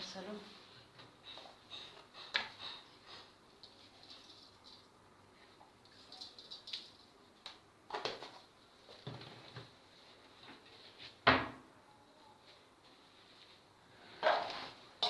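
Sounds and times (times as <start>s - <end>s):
kitchen knocks and clatters: 1.0s - 4.9s, 7.9s - 9.8s.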